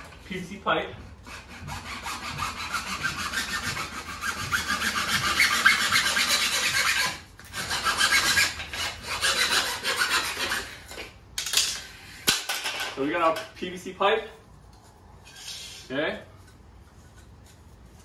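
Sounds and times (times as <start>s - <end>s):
saw cutting plastic pipe: 1.2s - 11.2s.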